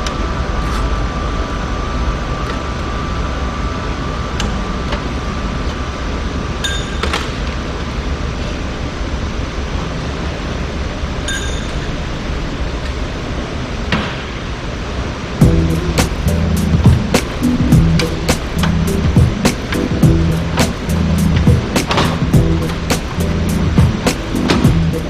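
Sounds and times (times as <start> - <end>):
ringing metallic clinks: 6.6 - 7.0, 11.3 - 12.0
low mechanical rumble: 15.1 - 25.0.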